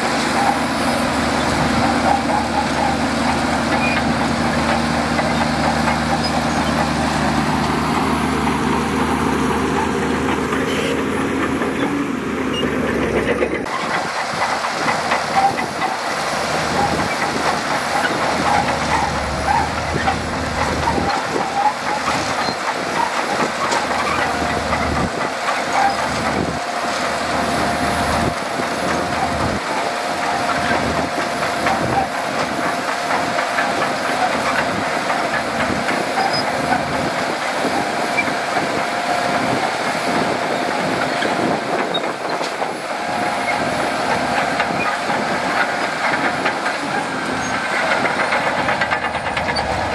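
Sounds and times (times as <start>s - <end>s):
bulldozer diesel engine: 0.0s - 49.9s
dense rattling clatter: 12.8s - 26.6s, 43.6s - 49.9s.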